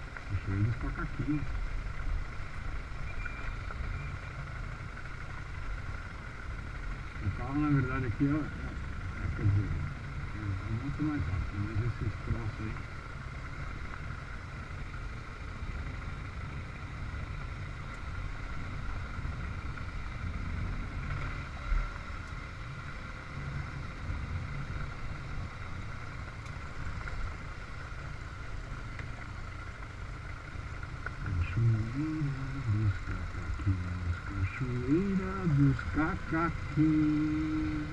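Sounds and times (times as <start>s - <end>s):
motorcycle engine and road rumble: 0.0s - 37.9s.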